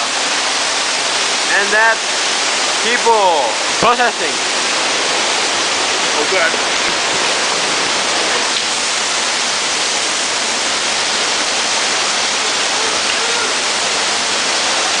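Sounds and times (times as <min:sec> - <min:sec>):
waterfall pouring: 0:00.0 - 0:15.0.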